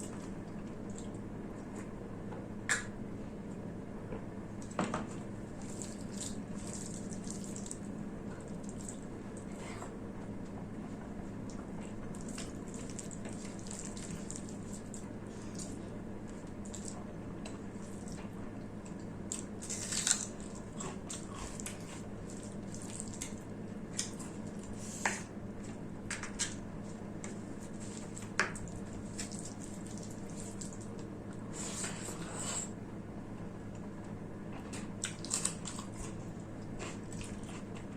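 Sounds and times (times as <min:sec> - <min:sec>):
steady low hum: 0:00.0 - 0:37.9
person chewing food: 0:10.8 - 0:25.3, 0:34.6 - 0:37.9.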